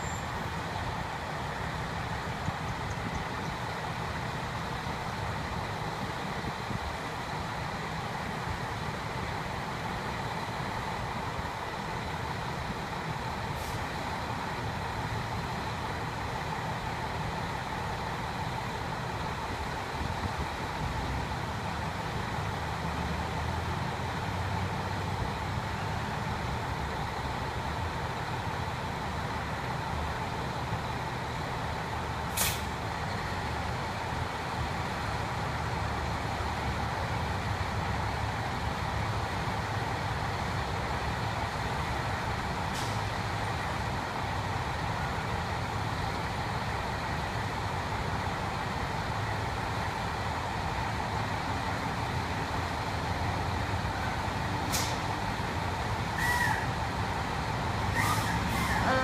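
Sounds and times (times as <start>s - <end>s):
truck engine running: 0.0s - 59.0s
short sharp hiss: 32.3s - 32.8s, 42.7s - 43.1s, 54.7s - 55.1s, 56.2s - 56.6s, 58.0s - 59.0s.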